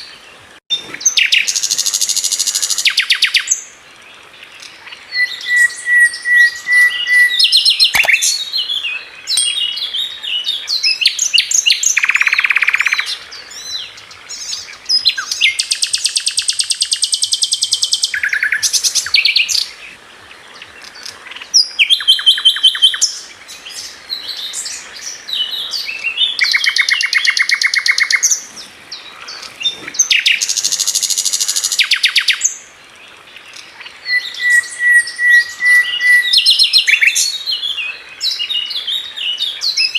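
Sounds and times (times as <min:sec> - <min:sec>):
songbirds chirping and trilling: 0:00.0 - 0:39.9.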